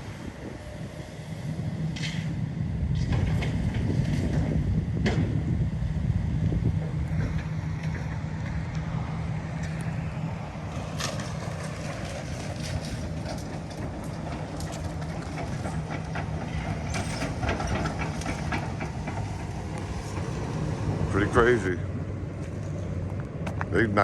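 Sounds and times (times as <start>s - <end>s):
heavy machine engine humming: 0.0s - 24.0s
cracks and clattering debris: 10.7s - 20.7s.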